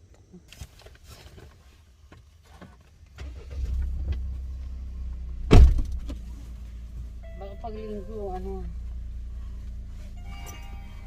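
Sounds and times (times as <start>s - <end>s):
car engine starting and idling: 2.9s - 11.0s
loud thump: 5.4s - 6.2s.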